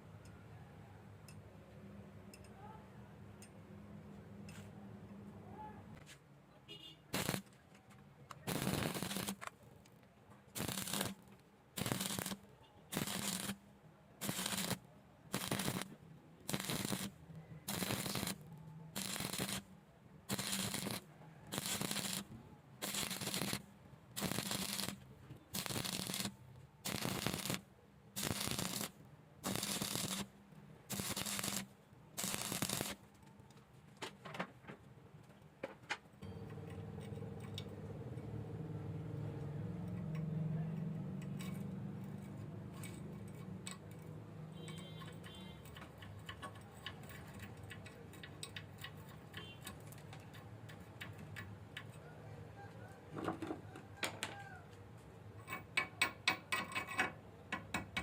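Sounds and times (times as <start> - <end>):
arc welding crackling: 7.1 - 7.6, 8.4 - 9.5, 10.5 - 13.6, 14.2 - 19.7, 20.3 - 30.3, 30.9 - 33.0.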